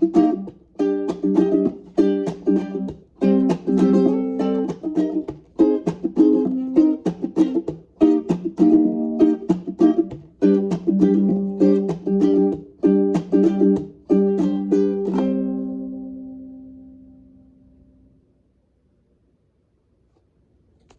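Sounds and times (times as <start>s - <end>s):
ukulele strumming chords: 0.0s - 18.2s.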